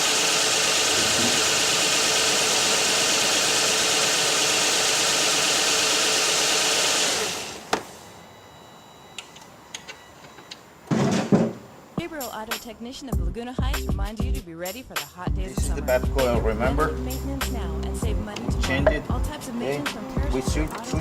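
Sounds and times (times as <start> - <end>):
car engine idling: 0.0 - 6.6, 15.6 - 21.0.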